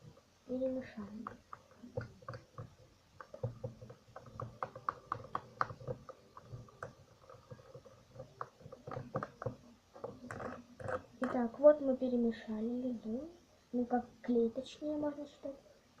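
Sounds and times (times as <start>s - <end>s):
stirrer clicking against container: 0.8s - 11.5s.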